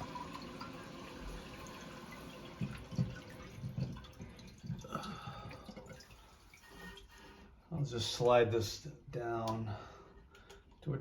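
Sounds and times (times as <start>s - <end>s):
water trickling in toilet tank: 0.0s - 8.3s.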